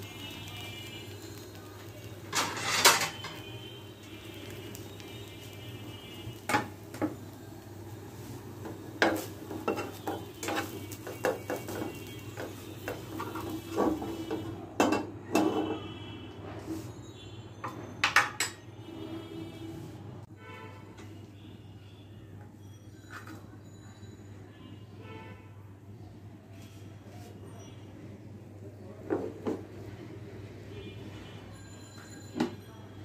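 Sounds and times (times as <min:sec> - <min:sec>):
light sizzle: 0:00.0 - 0:14.6
utensils clinking against a pan: 0:01.0 - 0:03.5, 0:08.6 - 0:15.8, 0:17.6 - 0:18.6.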